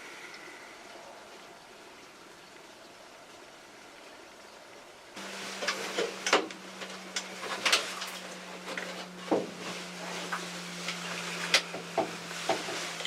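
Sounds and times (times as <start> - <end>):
steady low hum: 5.0 - 13.0
rustles: 5.2 - 13.0.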